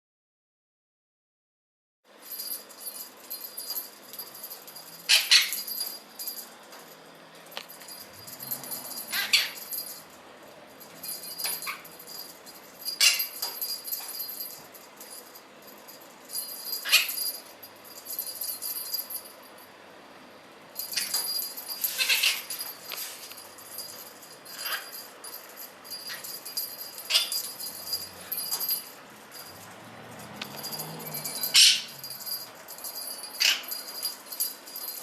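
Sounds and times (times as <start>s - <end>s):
metal bell jingling: 2.2s - 19.8s, 20.7s - 35.0s
parrot squawking and chattering: 5.1s - 5.7s, 9.0s - 9.7s, 13.0s - 13.5s, 16.8s - 17.2s, 21.8s - 22.6s, 24.5s - 25.0s, 27.0s - 27.6s, 31.3s - 32.0s, 33.3s - 33.9s.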